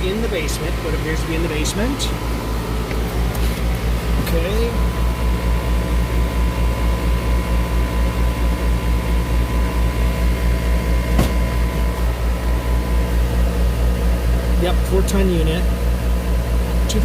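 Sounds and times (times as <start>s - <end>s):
air conditioner unit humming: 0.0s - 17.0s.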